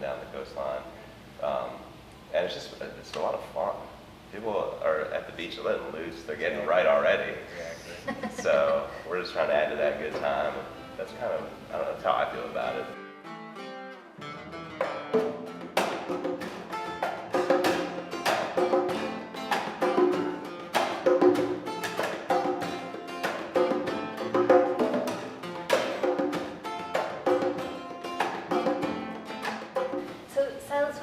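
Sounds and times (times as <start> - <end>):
percussion strikes: 14.2 - 30.3.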